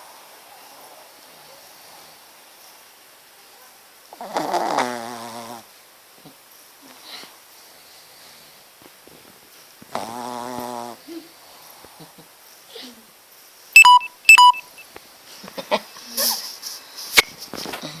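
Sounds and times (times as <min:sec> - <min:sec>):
dog snoring: 0:04.2 - 0:05.7, 0:09.9 - 0:11.0
loud electronic beeps: 0:13.8 - 0:14.8.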